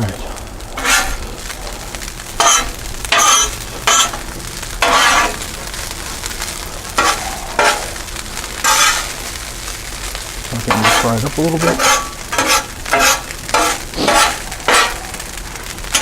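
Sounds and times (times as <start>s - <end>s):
rice sizzling on a griddle: 0.0s - 16.0s
spatula scraping a griddle: 0.7s - 16.0s.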